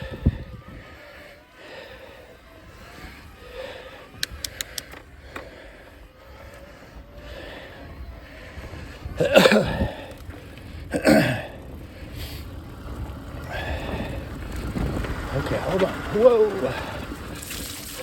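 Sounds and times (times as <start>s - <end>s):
person breathing hard: 0.0s - 10.9s
sharp clicks: 4.2s - 5.5s.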